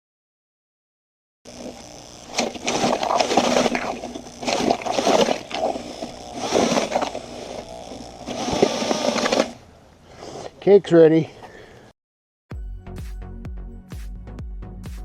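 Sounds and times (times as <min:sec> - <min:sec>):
concrete sloshing in a bucket: 0:02.4 - 0:07.6.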